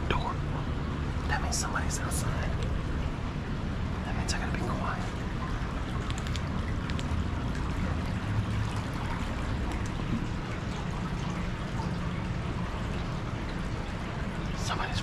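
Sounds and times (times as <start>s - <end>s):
water running through culvert: 0.0s - 15.0s
faint clicks and knocks: 6.0s - 7.2s.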